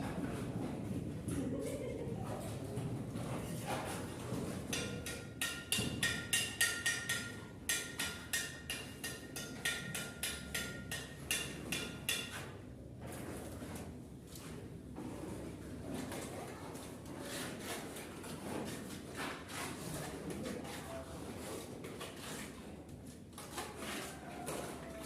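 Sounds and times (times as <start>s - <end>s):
sharp metallic knocks: 4.7s - 12.4s.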